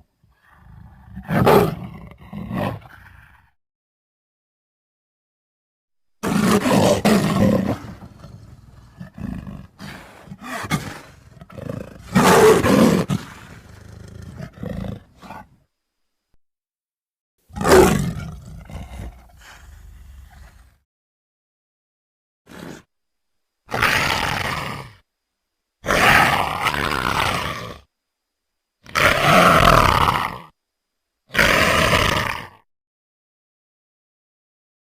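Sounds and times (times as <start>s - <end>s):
wolf snarling: 0.3s - 3.5s, 6.2s - 15.6s, 17.5s - 20.8s, 22.5s - 22.9s, 23.7s - 25.0s, 25.8s - 27.9s, 28.8s - 30.5s, 31.3s - 32.6s
wolf growling: 6.2s - 15.6s, 17.5s - 20.8s, 23.7s - 25.0s, 25.8s - 27.9s, 28.8s - 30.5s, 31.3s - 32.6s.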